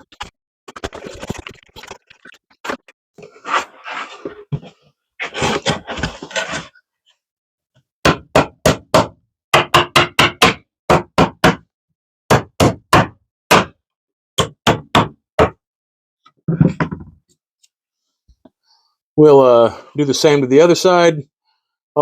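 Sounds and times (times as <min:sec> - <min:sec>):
rough scraping on wood: 0:03.2 - 0:06.8.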